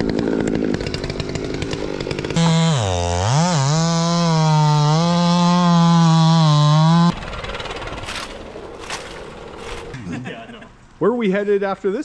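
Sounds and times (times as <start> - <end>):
saw revving high: 0.0 - 7.2
chainsaw running: 0.0 - 9.9.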